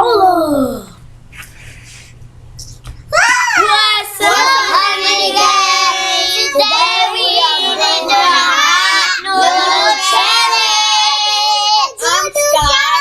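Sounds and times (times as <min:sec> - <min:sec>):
child singing: 0:03.3 - 0:13.0.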